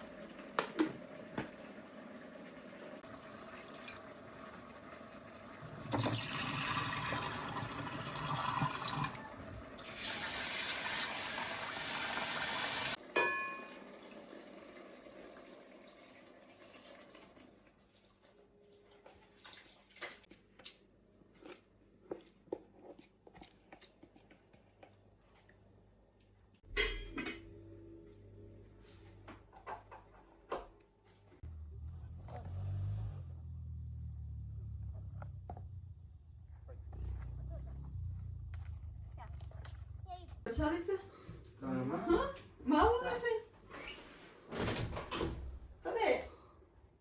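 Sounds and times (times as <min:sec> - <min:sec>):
water running: 0:00.0 - 0:20.3, 0:41.6 - 0:43.9.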